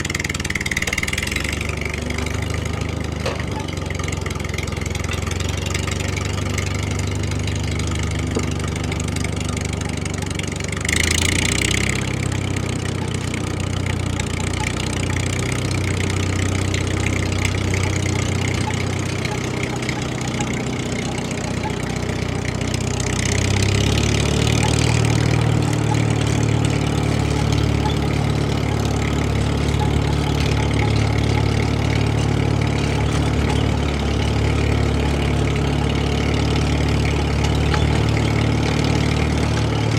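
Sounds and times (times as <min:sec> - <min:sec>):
vehicle engine idling: 0:00.0 - 0:39.9.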